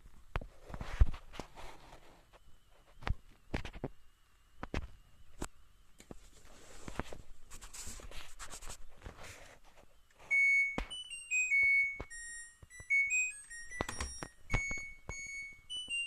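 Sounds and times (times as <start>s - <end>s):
rustling noise: 0.3s - 4.0s, 6.0s - 10.4s
washing machine beeper melody: 10.3s - 16.0s.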